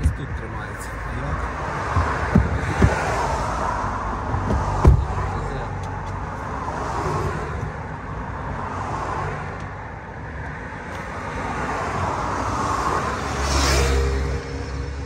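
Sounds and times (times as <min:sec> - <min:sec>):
road traffic: 0:00.0 - 0:15.0
vehicle passing loudly: 0:11.1 - 0:15.0.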